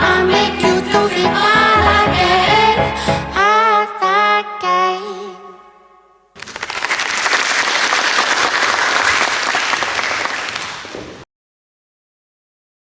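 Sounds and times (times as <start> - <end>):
pop song singing: 0.0 - 5.6
audience applauding: 6.4 - 11.2.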